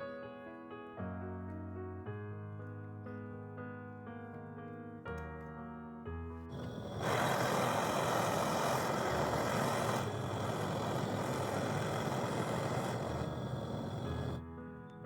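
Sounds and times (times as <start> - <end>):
gas hissing: 6.5 - 14.4.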